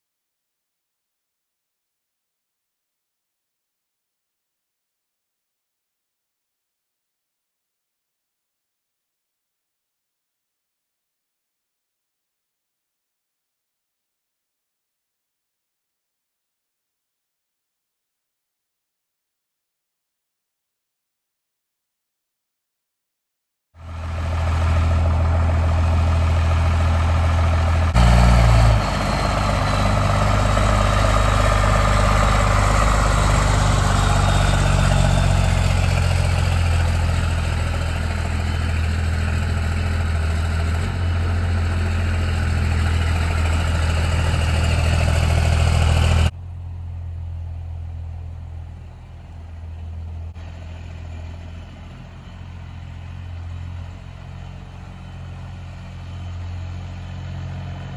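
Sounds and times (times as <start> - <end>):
engine revving: 23.8 - 46.3
pickup engine idling: 23.9 - 46.3.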